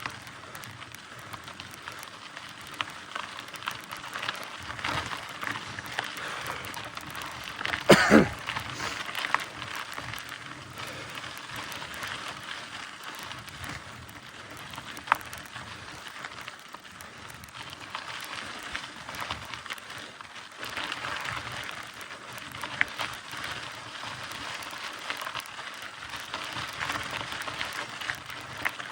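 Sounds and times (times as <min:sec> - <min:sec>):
bike clicks and knocks: 0:00.0 - 0:20.0
bike tyres crunching on gravel: 0:00.0 - 0:28.9.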